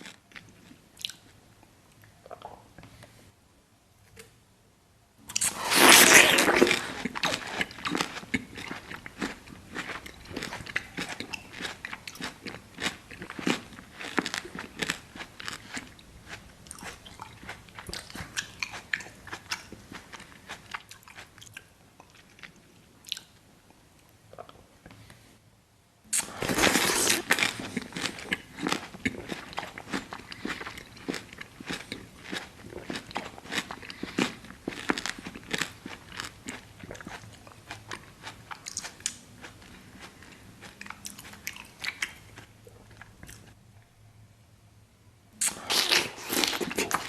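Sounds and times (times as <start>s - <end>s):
crunchy bite into watermelon: 5.3s - 15.9s, 26.2s - 37.2s, 45.4s - 47.0s
chewing: 5.3s - 23.3s, 26.2s - 43.6s.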